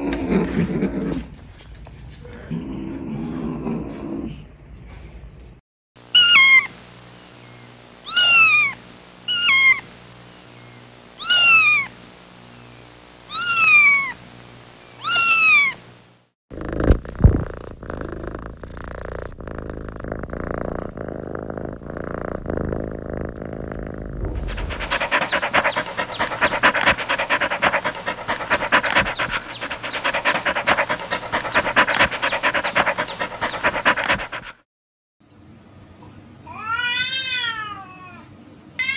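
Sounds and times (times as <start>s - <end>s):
kitten meowing: 11.2s - 11.9s, 15.0s - 15.8s.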